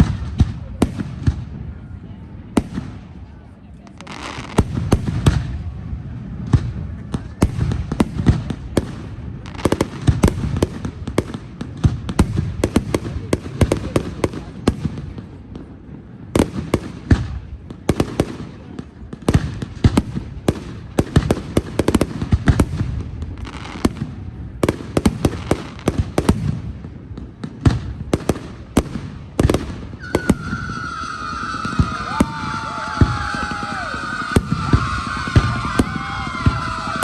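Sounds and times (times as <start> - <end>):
fireworks bangs and crackles: 0.0 - 37.0
long high falling whistle: 30.0 - 37.0.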